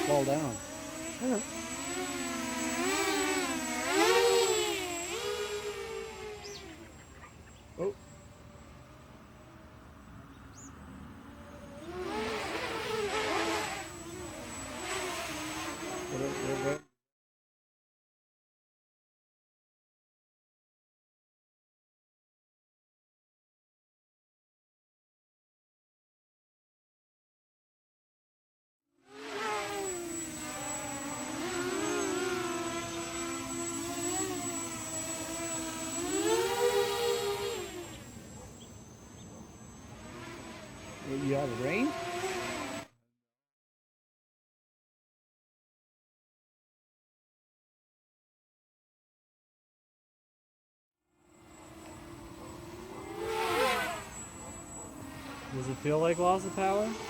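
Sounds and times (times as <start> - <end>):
drone propellers whirring: 0.0 - 16.8, 29.0 - 42.9, 51.2 - 57.0.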